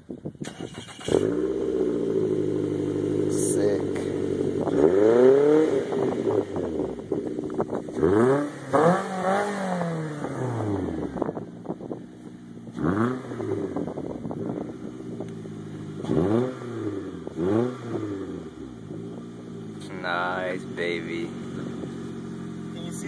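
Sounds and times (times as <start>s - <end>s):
car engine revving: 0.4s - 23.0s
car engine idling: 0.5s - 4.9s, 5.9s - 8.0s, 10.9s - 12.8s, 13.4s - 23.0s.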